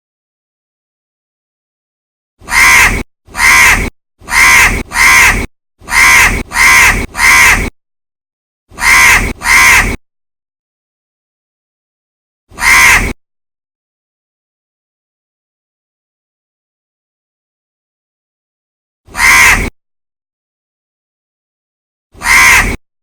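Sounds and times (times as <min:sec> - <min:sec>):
crow cawing: 0:02.4 - 0:07.7, 0:08.7 - 0:10.0, 0:12.6 - 0:13.2, 0:19.1 - 0:19.7, 0:22.2 - 0:22.8.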